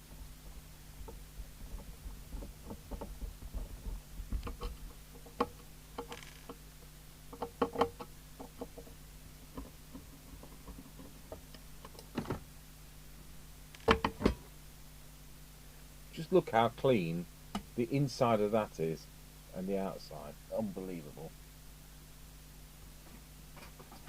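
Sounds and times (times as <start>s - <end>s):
steady low hum: 0.0s - 24.0s
clicks and light knocks on metal: 1.0s - 12.4s.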